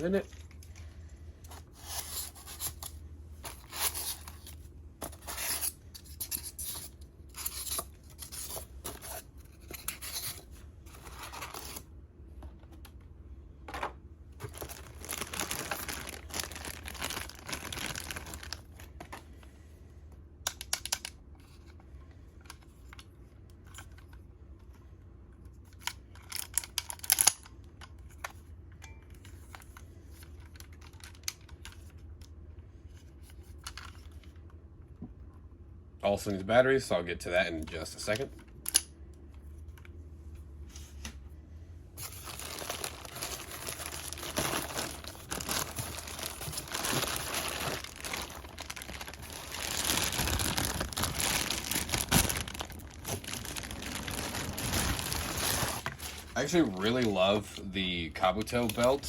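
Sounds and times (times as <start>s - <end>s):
packaging tearing and rustling: 1.6s - 11.9s, 14.4s - 19.0s, 42.0s - 57.0s
packaging crinkling: 14.4s - 19.1s, 42.0s - 57.1s.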